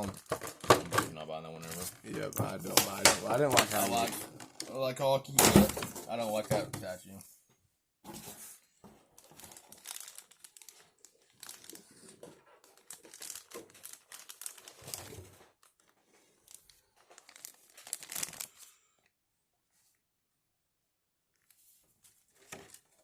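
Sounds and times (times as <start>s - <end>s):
packaging crinkling and rustling: 0.0s - 4.9s, 9.0s - 19.0s, 21.3s - 23.0s
packaging tearing: 9.3s - 15.8s, 16.5s - 18.7s.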